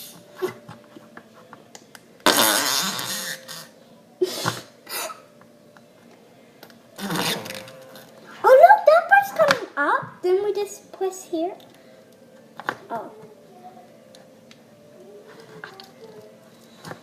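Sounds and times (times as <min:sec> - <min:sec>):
putty squelching fart-like sounds: 0:02.2 - 0:03.8, 0:07.0 - 0:08.1.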